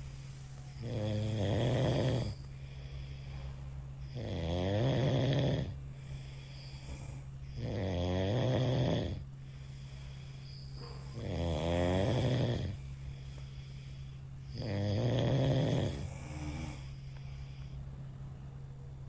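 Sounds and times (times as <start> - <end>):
steady low hum: 0.0 - 19.0
person snoring: 0.8 - 3.3, 4.0 - 10.3, 11.2 - 12.8, 13.4 - 17.7.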